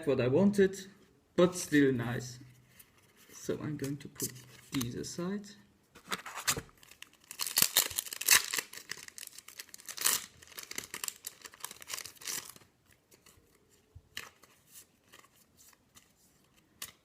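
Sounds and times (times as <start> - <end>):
wrapper tearing and crinkling: 6.2 - 13.4.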